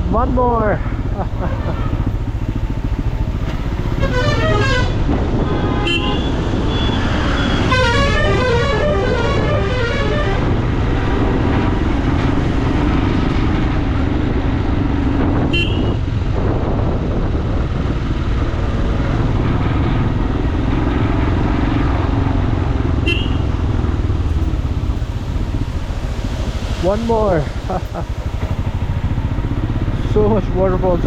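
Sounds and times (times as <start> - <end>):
motorcycle engine: 0.0 - 31.0
wind rumble: 0.0 - 31.0
horn toots: 3.9 - 10.7, 15.4 - 16.0, 23.0 - 23.6.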